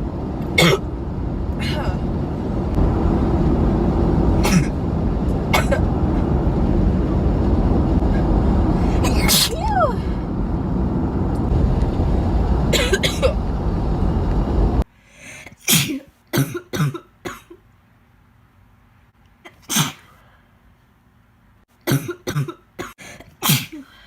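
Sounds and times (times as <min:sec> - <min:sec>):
loud low rumble: 0:00.0 - 0:14.8
girl coughing: 0:04.4 - 0:04.7, 0:05.6 - 0:05.8, 0:09.0 - 0:09.6, 0:15.6 - 0:17.6, 0:21.9 - 0:23.9.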